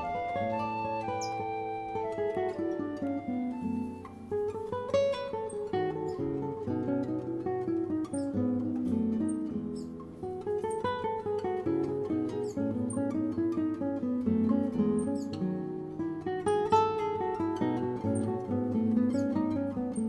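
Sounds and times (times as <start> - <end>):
high chirps: 0.0 - 4.2
acoustic guitar music: 0.0 - 20.0.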